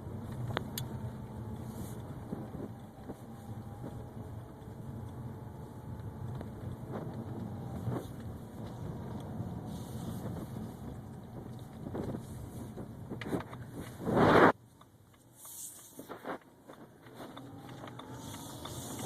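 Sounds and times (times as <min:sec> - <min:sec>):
faint thin whine: 0:00.0 - 0:14.6
car engine rumbling: 0:00.0 - 0:19.0.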